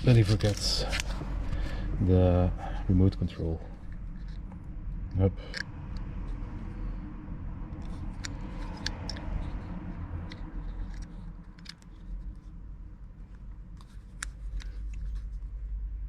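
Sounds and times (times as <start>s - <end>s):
low handling rumble: 0.0s - 16.0s
small plastic clicks and scrapes: 7.8s - 15.5s.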